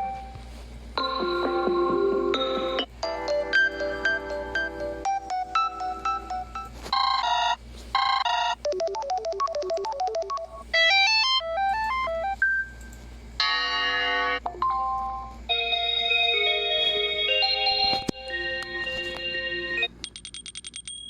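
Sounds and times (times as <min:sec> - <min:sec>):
phone ringtones: 0:05.6 - 0:11.4, 0:13.4 - 0:21.0.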